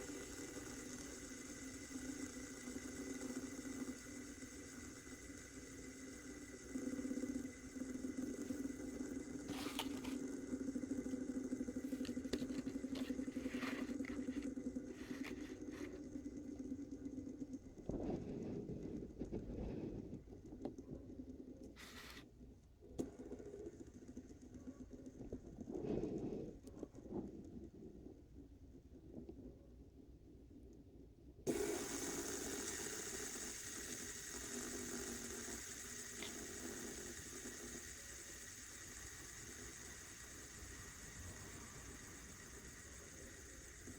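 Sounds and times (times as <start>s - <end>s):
fidget spinner flick: 0.0s - 16.0s, 31.5s - 43.9s
fidget spinner whirring: 0.0s - 28.2s, 31.5s - 43.9s.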